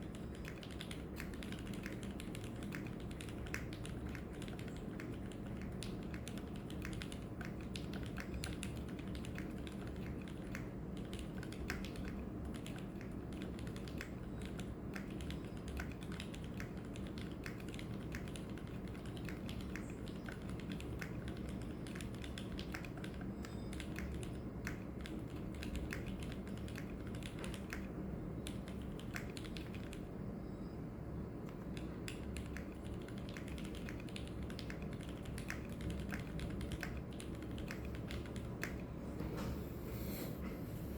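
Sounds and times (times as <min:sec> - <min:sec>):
mechanical keyboard typing: 0:00.0 - 0:30.1, 0:31.4 - 0:38.9.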